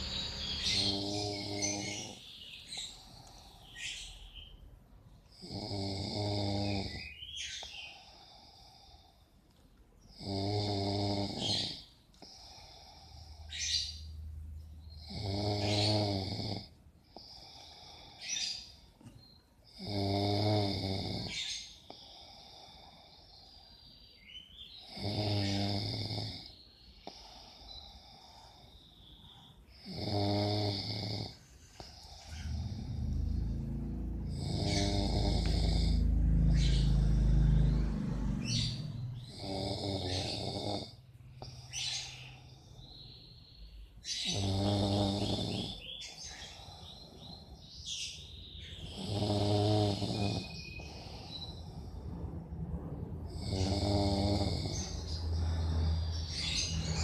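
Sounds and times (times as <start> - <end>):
man snoring: 0.0 - 3.6, 5.3 - 9.2, 10.1 - 13.8, 15.0 - 18.7, 19.7 - 23.6, 24.8 - 28.7, 29.8 - 41.8, 44.2 - 47.5, 48.8 - 51.9, 53.3 - 57.0
quiet breathing: 0.0 - 57.0.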